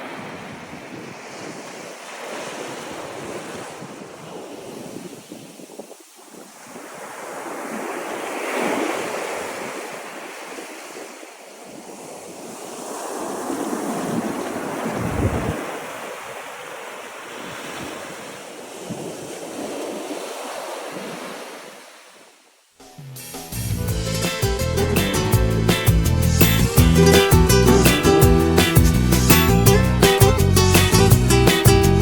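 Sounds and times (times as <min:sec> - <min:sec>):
wind gusting over microphone: 0:00.0 - 0:01.9, 0:02.7 - 0:06.9, 0:13.4 - 0:16.0
low wind buffet: 0:13.9 - 0:15.6, 0:23.8 - 0:32.0
song with guitar: 0:22.8 - 0:32.0.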